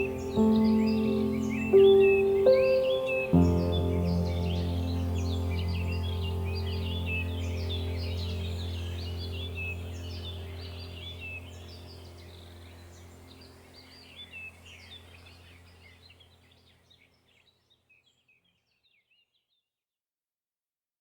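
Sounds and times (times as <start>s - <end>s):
steady low drone: 0.0s - 16.3s
birds chirping: 0.0s - 19.2s.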